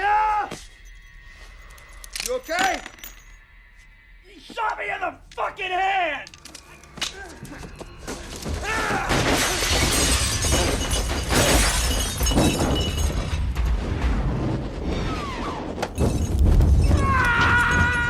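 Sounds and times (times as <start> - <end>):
glass shattering: 1.8 - 3.4, 8.1 - 13.8, 15.8 - 18.0.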